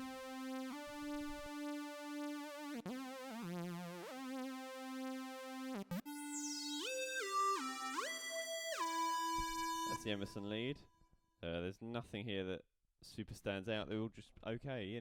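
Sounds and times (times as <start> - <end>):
synth lead playing notes: 0.0 - 10.4.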